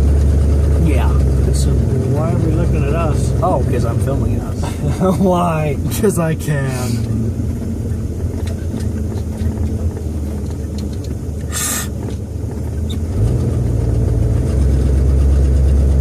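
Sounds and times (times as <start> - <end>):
car engine hum inside cabin: 0.0 - 16.0
brief hiss: 11.5 - 11.9.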